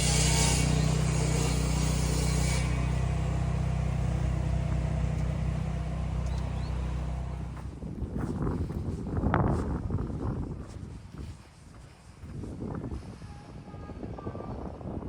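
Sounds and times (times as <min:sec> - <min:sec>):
vehicle engine humming: 0:00.0 - 0:07.9.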